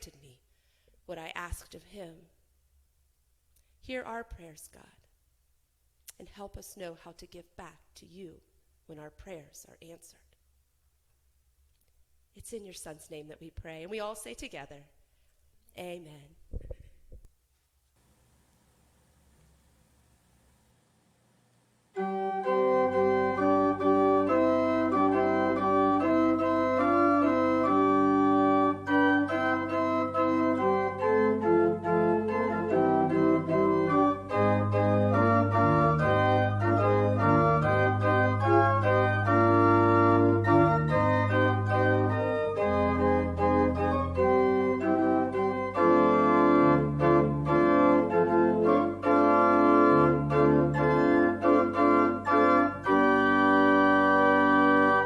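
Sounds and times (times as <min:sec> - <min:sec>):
organ playing sustained chords: 0:22.0 - 0:55.0.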